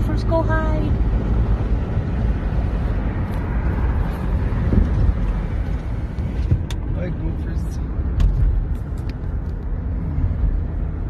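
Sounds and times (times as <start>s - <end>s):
road noise inside car: 0.0s - 11.0s
wind noise: 1.8s - 6.9s.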